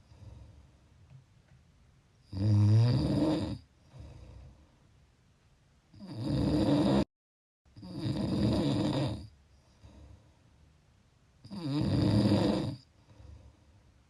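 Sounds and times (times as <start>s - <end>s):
faint breathing: 0.0s - 1.0s, 3.8s - 5.0s, 9.5s - 10.6s, 12.8s - 14.0s
person snoring: 2.3s - 4.5s, 6.0s - 7.1s, 7.8s - 10.0s, 11.5s - 12.9s.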